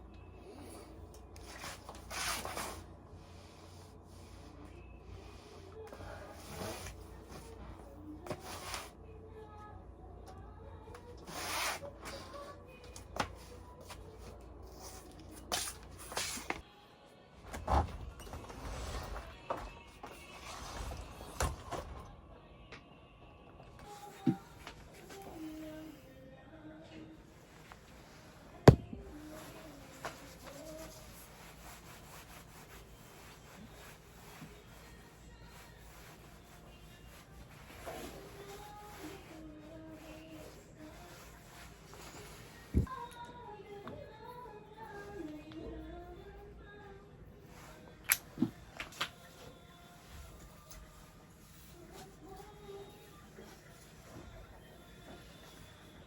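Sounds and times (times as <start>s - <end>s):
soft rubbing and rustling: 27.3s - 43.5s, 47.4s - 56.0s.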